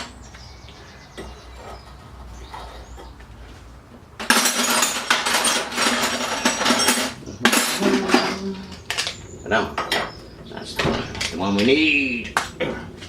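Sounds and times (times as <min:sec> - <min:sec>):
metal hand tools clinking: 0:04.2 - 0:09.1.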